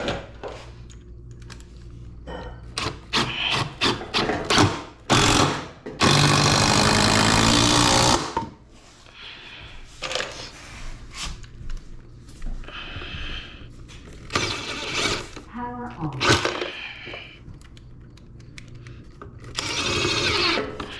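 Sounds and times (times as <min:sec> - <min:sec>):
impact driver hammering: 0:02.8 - 0:08.5.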